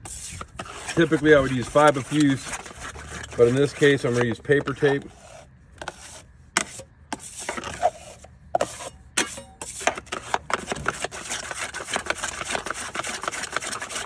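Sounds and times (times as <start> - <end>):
tool scraping container: 0.0 - 14.0.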